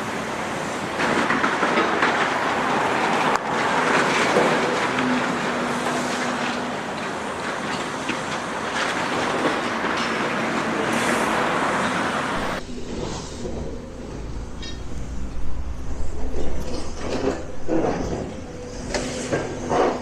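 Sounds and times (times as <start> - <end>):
debris clattering and crunching: 0.9 - 10.8, 12.4 - 20.0
machine rumble: 12.4 - 20.0.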